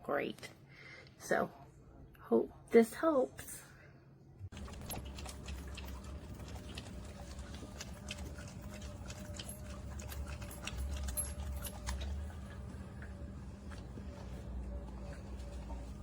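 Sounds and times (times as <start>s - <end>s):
low hum: 4.4s - 16.0s
small clicks and splashes: 4.5s - 12.5s.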